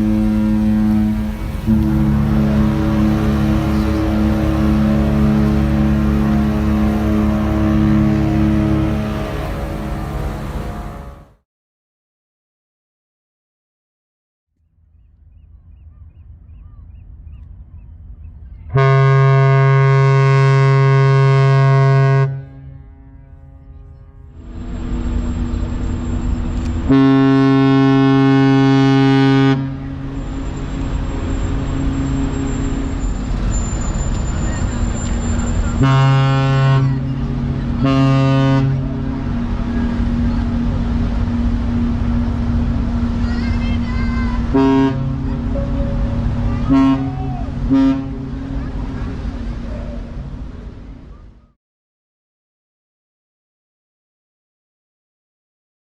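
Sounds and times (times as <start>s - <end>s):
deep ship's horn blast: 0.0s - 11.4s, 18.7s - 51.1s
low hum and rumble: 0.0s - 11.4s, 14.6s - 51.5s
steady low rumble: 36.6s - 51.4s.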